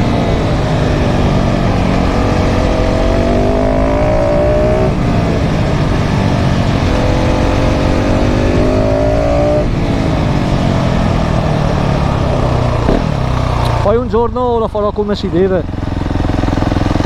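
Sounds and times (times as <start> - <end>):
motorcycle engine accelerating: 0.0 - 17.0.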